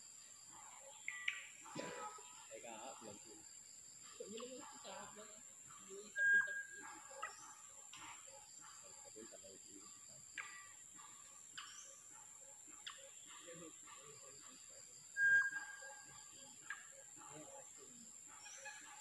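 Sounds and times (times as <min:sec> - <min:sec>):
birds giving sharp calls: 0:10.4 - 0:19.0.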